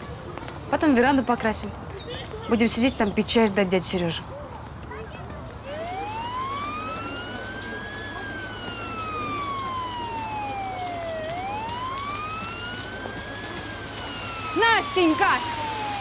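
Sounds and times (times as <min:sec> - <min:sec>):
emergency vehicle siren wailing: 0:05.6 - 0:16.0.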